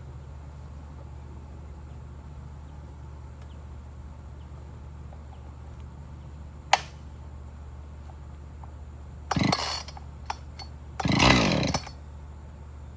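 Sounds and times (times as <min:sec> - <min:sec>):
sharp click: 0:06.8 - 0:07.0, 0:09.3 - 0:11.9.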